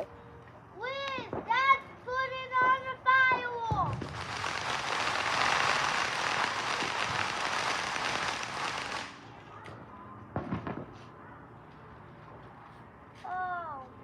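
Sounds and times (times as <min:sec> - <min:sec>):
firework crackling hiss: 0:03.8 - 0:09.4.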